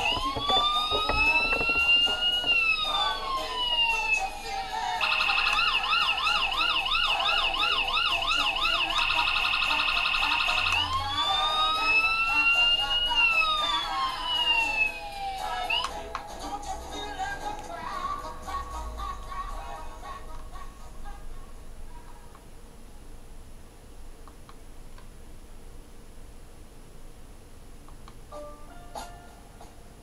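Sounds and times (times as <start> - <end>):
electronic siren wailing and yelping: 0.0 - 15.9.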